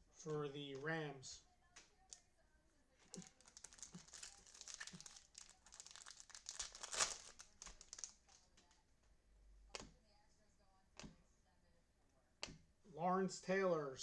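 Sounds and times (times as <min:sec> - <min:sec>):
foil wrapper crinkling and tearing: 0:03.0 - 0:08.5.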